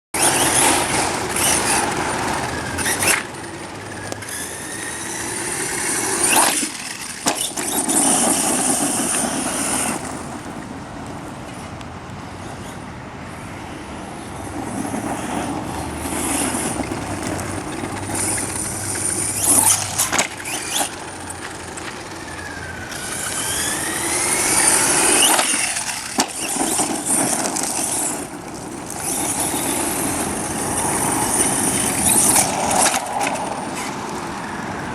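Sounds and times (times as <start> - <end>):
electric motor whining: 0.2 - 10.6, 14.6 - 34.9.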